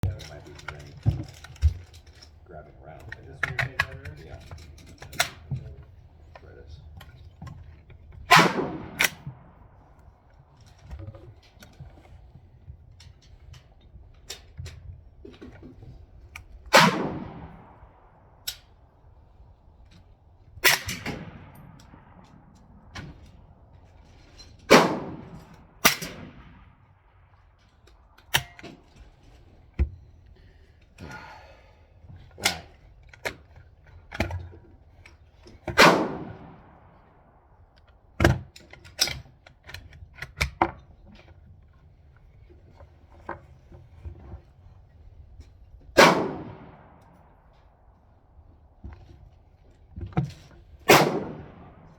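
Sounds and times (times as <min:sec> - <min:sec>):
quiet clicks and clanks: 0:00.0 - 0:08.2
rifle gunshots with echo: 0:08.3 - 0:09.8, 0:16.7 - 0:18.5, 0:20.6 - 0:23.1, 0:24.7 - 0:26.7, 0:35.8 - 0:36.9, 0:46.0 - 0:47.0, 0:50.9 - 0:51.9.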